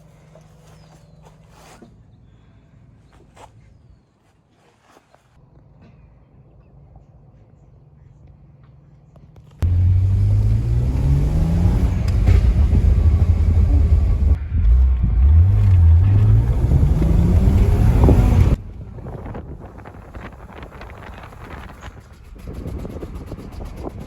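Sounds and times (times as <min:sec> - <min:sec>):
car engine accelerating hard: 0:09.6 - 0:18.7.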